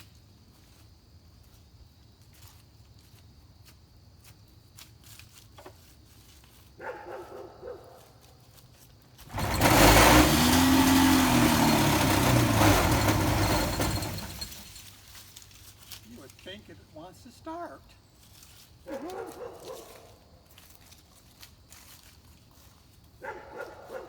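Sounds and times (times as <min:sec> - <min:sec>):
engine cranking without starting: 0:09.2 - 0:15.1.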